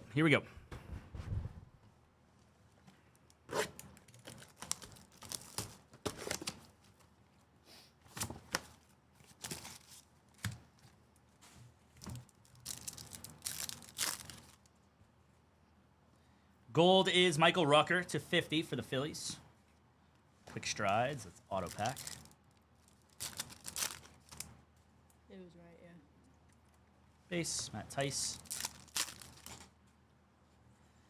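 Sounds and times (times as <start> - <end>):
card pack wrappers tearing: 3.5 - 6.7, 12.2 - 14.7, 21.6 - 24.5, 28.3 - 29.7.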